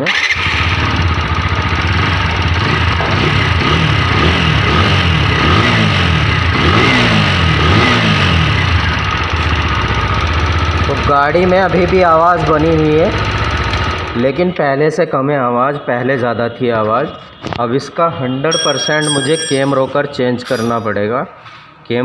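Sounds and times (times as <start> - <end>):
motorcycle engine revving: 0.0 - 14.6.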